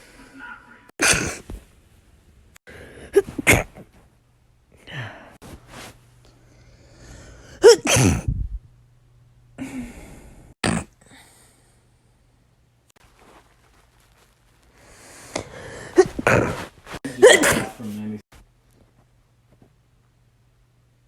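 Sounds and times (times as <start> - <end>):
person sneezing: 1.0 - 1.5, 3.1 - 3.8, 7.6 - 8.3, 15.4 - 17.9
quiet breaths: 9.6 - 12.6.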